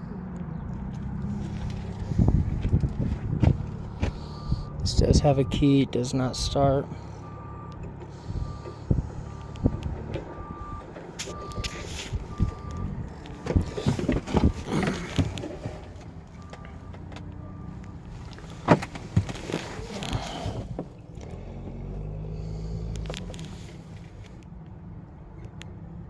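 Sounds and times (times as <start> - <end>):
engine rumbling by: 0.0 - 26.0
clunks and knocks: 1.7 - 4.2, 7.8 - 17.3, 18.4 - 21.0
reversing beeper: 4.1 - 15.2.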